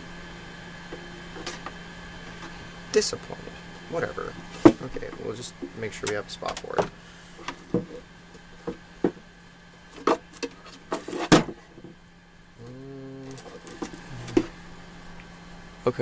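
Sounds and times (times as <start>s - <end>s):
low hum: 11.7s - 15.8s.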